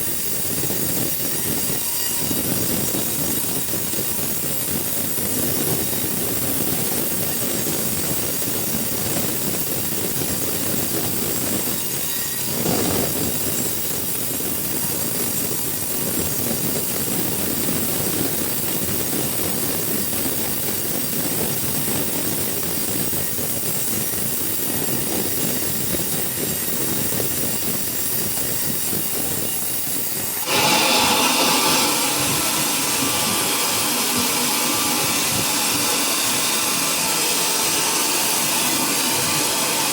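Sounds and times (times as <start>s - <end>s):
high machine whine: 0.0s - 39.9s
sawmill machinery rushing: 0.0s - 39.9s.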